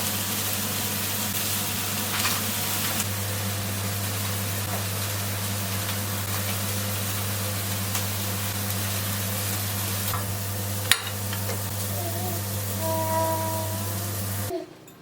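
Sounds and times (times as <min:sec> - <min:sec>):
appliance motor humming: 0:02.8 - 0:14.6.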